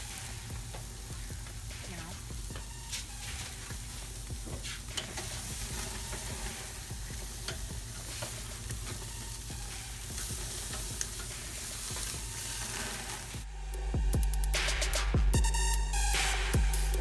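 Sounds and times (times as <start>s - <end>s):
pops and crackles: 0.0s - 13.4s
steak sizzling: 0.0s - 13.4s.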